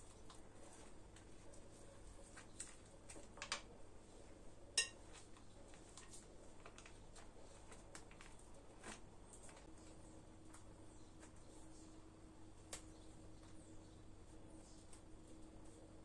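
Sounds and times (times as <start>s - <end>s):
kitchenware clinking: 4.8s - 5.0s.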